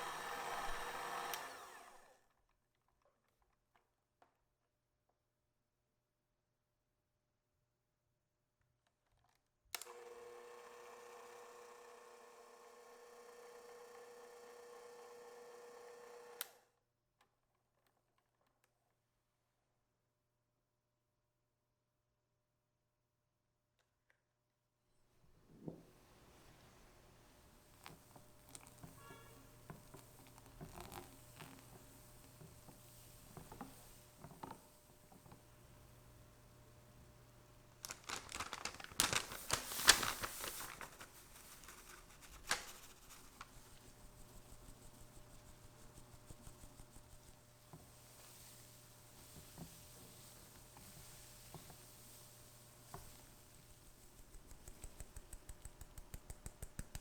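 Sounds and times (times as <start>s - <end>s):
appliance motor humming: 0.0s - 2.2s, 9.8s - 16.6s
rustling and crinkling handling: 25.2s - 35.4s, 37.7s - 57.0s.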